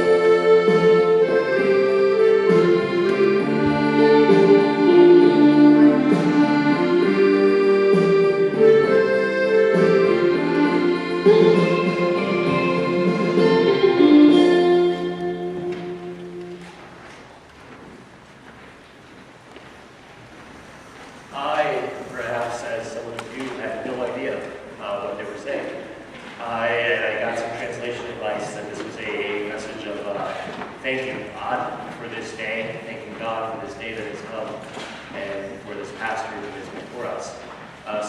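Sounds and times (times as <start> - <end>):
organ chords in church echo: 0.0 - 17.2.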